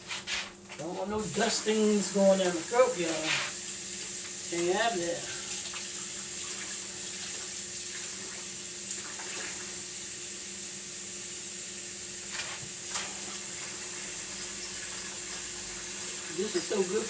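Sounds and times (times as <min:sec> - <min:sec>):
bottle brush scrubbing: 0:01.2 - 0:03.6
food sizzling in a pan: 0:01.2 - 0:17.0
kitchen tap running: 0:01.2 - 0:17.0.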